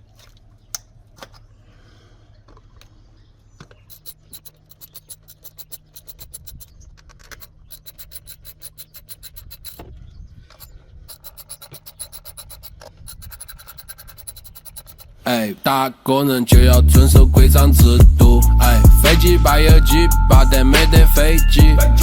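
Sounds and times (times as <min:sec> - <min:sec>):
ratchet wrench clicking: 0:03.8 - 0:09.8, 0:10.5 - 0:15.2.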